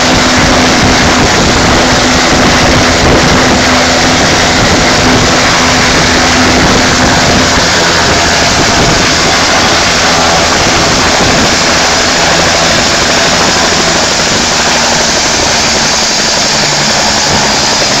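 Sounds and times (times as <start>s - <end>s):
helicopter engine and rotor: 0.0s - 18.0s.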